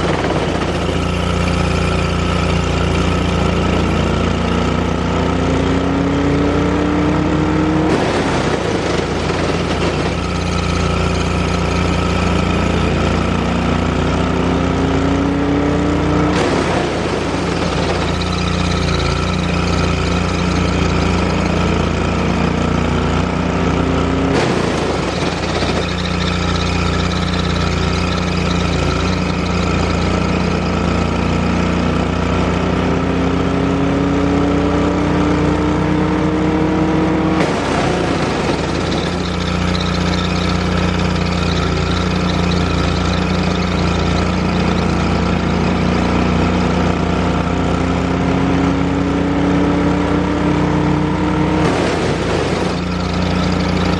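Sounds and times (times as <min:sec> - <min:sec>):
chipper whine rising in pitch: 0:00.0 - 0:53.9
engine running steadily: 0:00.0 - 0:53.9
burst of rough noise: 0:07.9 - 0:12.0, 0:16.3 - 0:20.4, 0:24.3 - 0:30.0, 0:37.4 - 0:46.2, 0:51.6 - 0:53.9.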